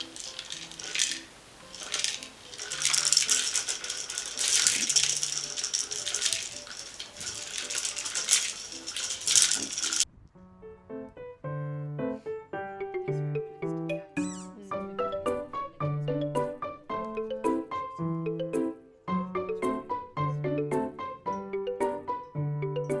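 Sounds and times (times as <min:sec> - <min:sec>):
dry rattling and rustling: 0:00.0 - 0:10.0
soft background music: 0:10.4 - 0:23.0.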